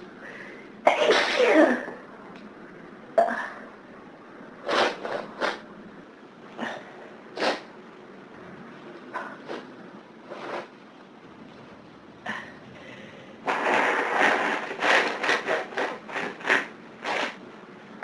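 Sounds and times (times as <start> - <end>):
noisy rush of breath: 0.0 - 0.8, 12.3 - 14.6
short sharp nasal bursts: 7.4 - 7.7.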